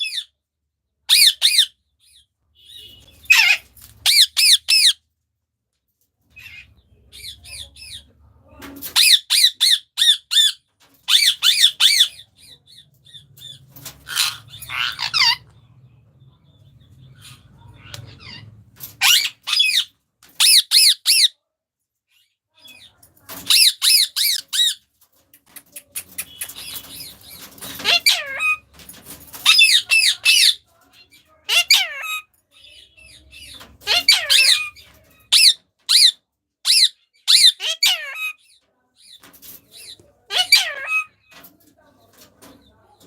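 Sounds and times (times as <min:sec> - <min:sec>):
parrots squawking: 0:01.1 - 0:01.8, 0:02.7 - 0:05.0, 0:09.0 - 0:12.2, 0:13.8 - 0:15.5, 0:17.2 - 0:21.3, 0:23.5 - 0:24.8, 0:26.0 - 0:28.6, 0:29.4 - 0:30.6, 0:31.5 - 0:32.3, 0:33.8 - 0:38.4, 0:40.3 - 0:41.2.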